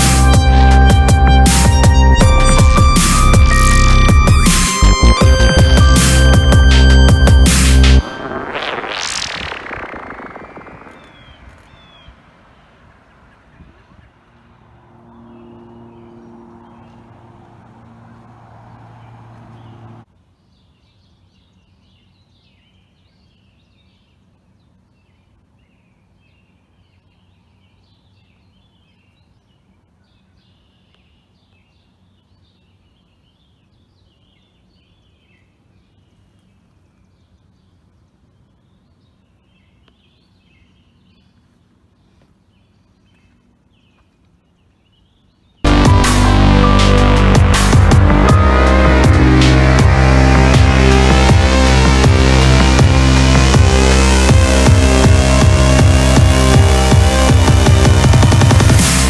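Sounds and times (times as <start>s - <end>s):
loud steady low hum: 0.0s - 12.8s, 13.6s - 20.0s, 45.7s - 59.0s
small birds chirping: 8.1s - 20.0s.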